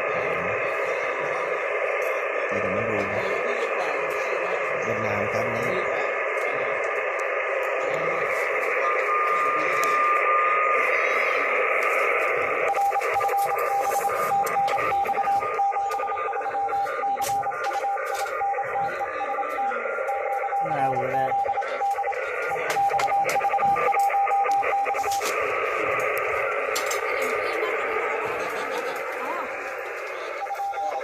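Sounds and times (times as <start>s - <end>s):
radio receiver hiss: 0.0s - 31.0s
morse code beeps: 12.5s - 29.1s, 30.1s - 31.0s.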